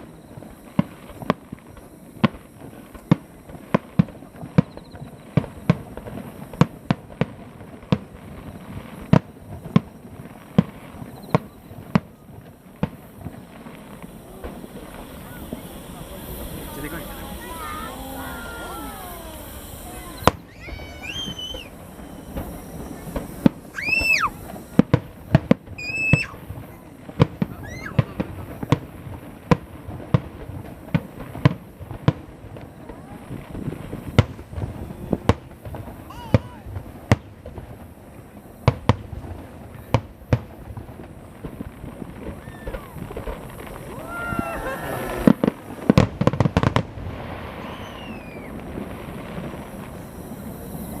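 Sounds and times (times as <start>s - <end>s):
firework whistles: 0.0s - 51.0s
fireworks bangs and pops: 0.0s - 51.0s.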